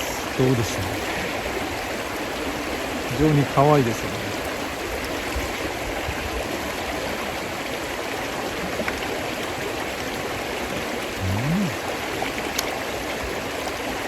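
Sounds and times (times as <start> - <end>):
stream water flowing: 0.0 - 14.0
person humming: 11.2 - 11.8.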